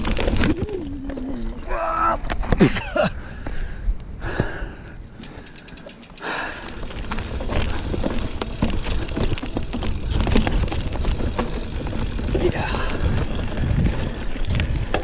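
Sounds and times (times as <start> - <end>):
bike rattling on dirt trail: 0.0 - 15.0
wind rumble on microphone: 6.8 - 15.0.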